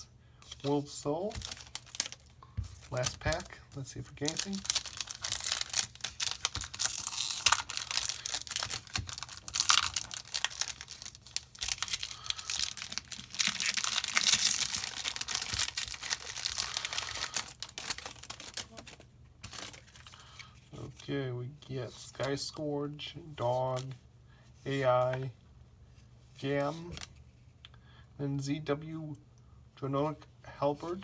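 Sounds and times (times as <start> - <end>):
foil wrapper tearing and crinkling: 1.3 - 2.3, 4.2 - 20.1.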